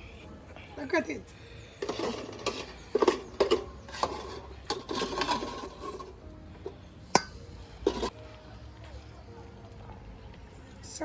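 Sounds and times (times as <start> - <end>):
utensil scraping cookware: 1.8 - 8.2.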